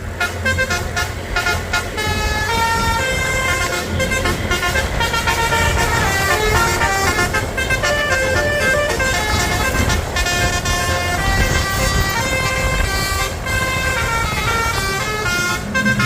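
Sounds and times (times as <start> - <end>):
low rumble of bus: 0.0 - 16.0
multi-tone bus horn melody: 0.0 - 16.0.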